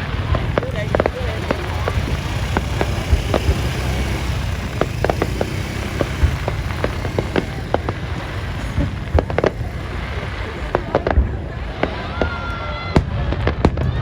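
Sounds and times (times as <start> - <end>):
fireworks cracking and popping: 0.0 - 14.0
deep fireworks booms: 5.8 - 14.0.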